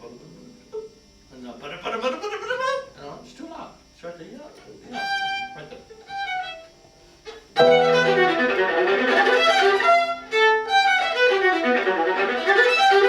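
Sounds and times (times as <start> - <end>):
viola played with bow: 4.9 - 6.7, 7.3 - 13.0.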